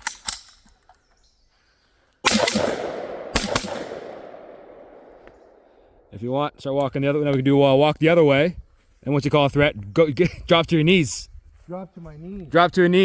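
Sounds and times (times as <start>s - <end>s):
gunshots with rolling echo: 2.2s - 6.2s.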